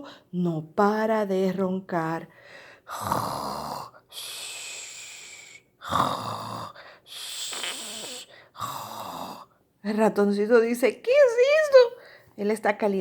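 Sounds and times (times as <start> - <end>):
person imitating snoring: 2.9 - 9.5.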